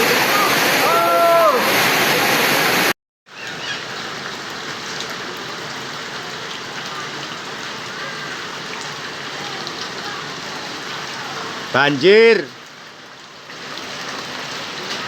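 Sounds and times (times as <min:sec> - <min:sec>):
heavy rain hissing: 0:00.0 - 0:15.0.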